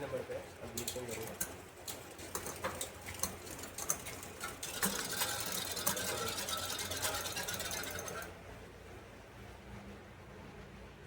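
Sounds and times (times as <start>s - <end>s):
bicycle chain and gears clicking: 0.1s - 8.4s.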